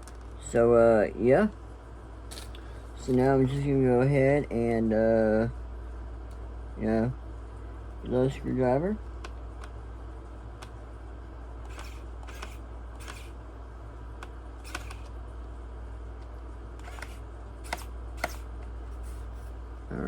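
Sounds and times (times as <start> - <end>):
steady low hum: 0.0 - 20.0
screwdriver clicks and scrapes: 11.6 - 13.4, 14.6 - 15.1, 16.8 - 19.5.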